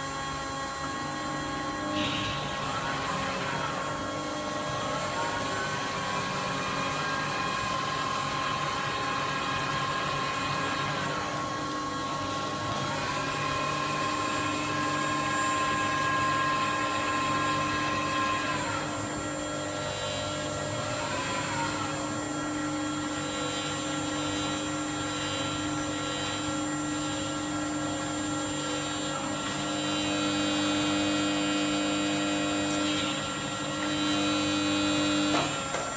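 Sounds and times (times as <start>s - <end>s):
cnc machine whine: 0.0s - 35.9s.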